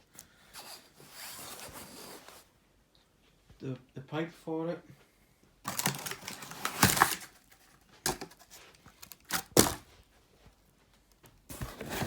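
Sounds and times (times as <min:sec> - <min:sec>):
packaging rustling and crinkling: 0:05.6 - 0:10.0, 0:11.5 - 0:12.0.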